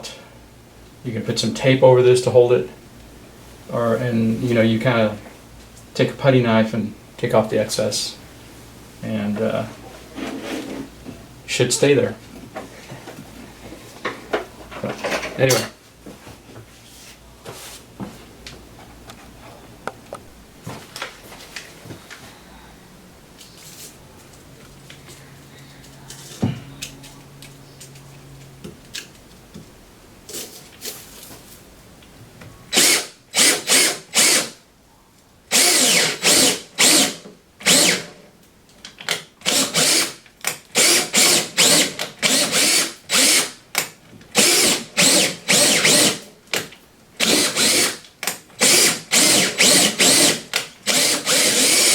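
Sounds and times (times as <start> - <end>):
quiet handling noises: 23.3 - 32.6
power drill short bursts: 32.7 - 34.6, 35.5 - 38.1, 39.5 - 40.2, 40.8 - 43.6, 44.4 - 46.2, 47.2 - 48.0, 48.6 - 51.9.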